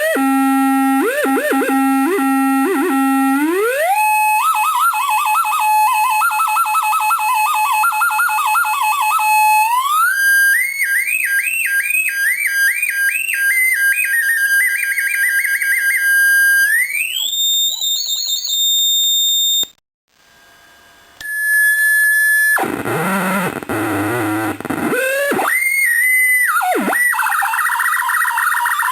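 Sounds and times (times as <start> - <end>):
buzzy electronic drone: 0.0 - 12.5, 21.3 - 28.9
rapid warbling electronic chirps: 24.9 - 28.9.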